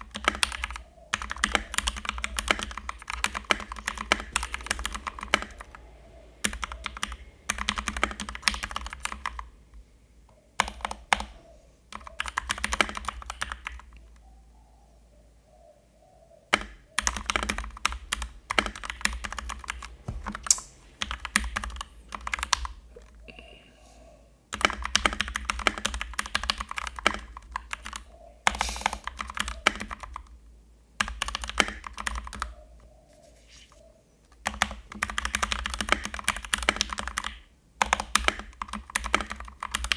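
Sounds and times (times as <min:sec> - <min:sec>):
mechanical keyboard typing: 0:00.0 - 0:05.8, 0:06.4 - 0:09.5, 0:10.6 - 0:14.0, 0:16.5 - 0:22.8, 0:24.5 - 0:30.4, 0:31.0 - 0:32.5, 0:34.3 - 0:39.9.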